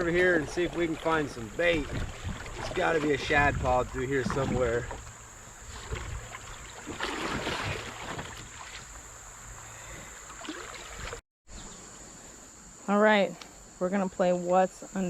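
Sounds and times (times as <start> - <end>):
wind rumble on microphone: 0.0 - 8.5
paddle strokes splashing water: 0.0 - 11.2.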